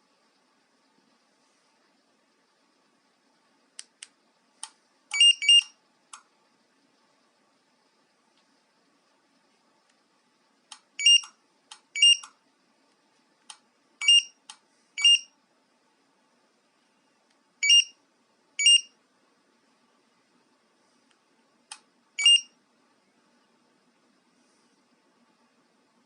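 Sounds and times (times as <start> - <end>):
key fob beeping: 22.2 - 22.5.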